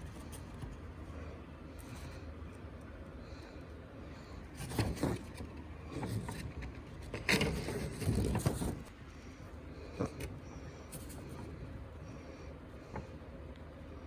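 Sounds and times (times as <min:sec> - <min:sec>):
low steady hum: 0:00.0 - 0:14.0
plastic objects rustling and knocking: 0:04.6 - 0:09.0.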